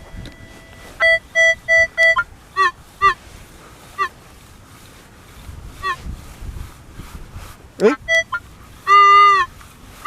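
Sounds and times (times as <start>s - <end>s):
metal detector beeps: 0.0s - 3.2s.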